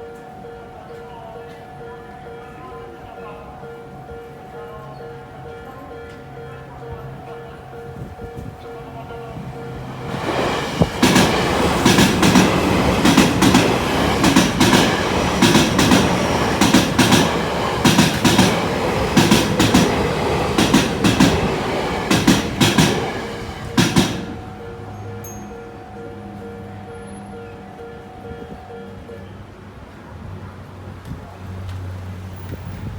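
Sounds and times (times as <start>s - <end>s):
level crossing warning bell: 0.0s - 29.9s
train wheels clacking on rail joints: 9.4s - 25.4s.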